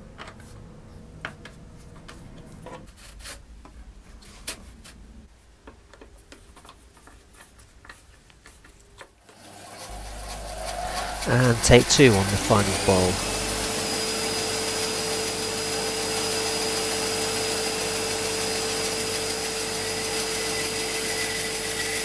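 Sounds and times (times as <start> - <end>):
faint steady hum: 9.4 - 14.9.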